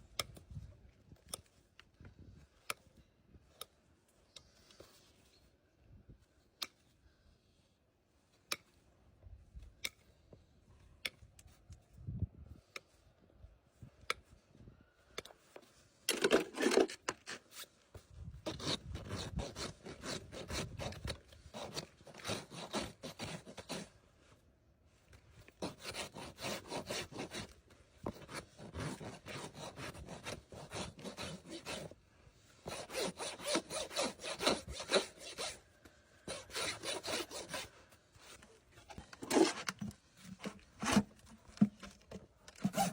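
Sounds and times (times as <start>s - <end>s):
rasp filing hoof: 18.5s - 24.0s, 25.6s - 32.0s, 32.6s - 41.9s, 42.5s - 42.9s.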